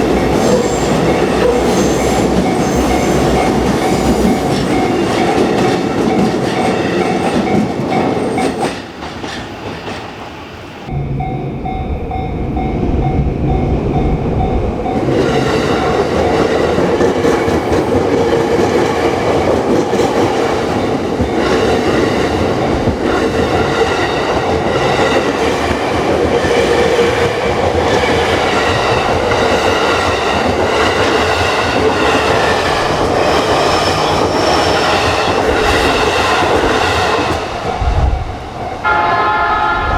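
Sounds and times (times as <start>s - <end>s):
electric train passing: 0.0s - 39.9s
level-crossing bell clanging: 10.8s - 16.9s.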